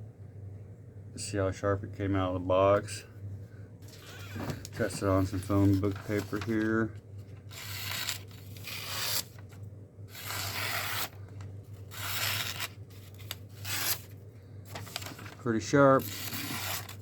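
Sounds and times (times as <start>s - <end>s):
knife slicing paper: 7.5s - 9.4s, 10.1s - 11.2s, 11.8s - 14.1s, 16.0s - 17.0s.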